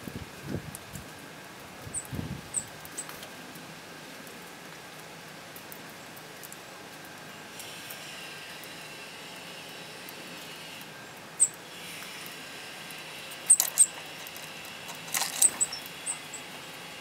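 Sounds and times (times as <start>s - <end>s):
small birds high chirps: 11.4s - 11.6s, 13.3s - 16.9s.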